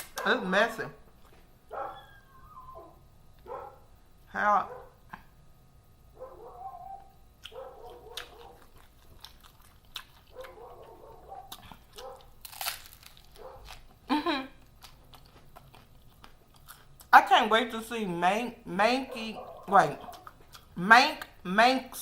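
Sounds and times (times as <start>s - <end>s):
crunchy taco being chewed: 7.2s - 17.2s, 19.2s - 21.4s.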